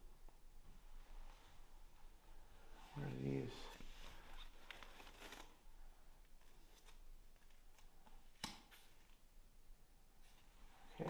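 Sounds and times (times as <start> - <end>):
cards rustling and ticking: 4.5 - 5.6.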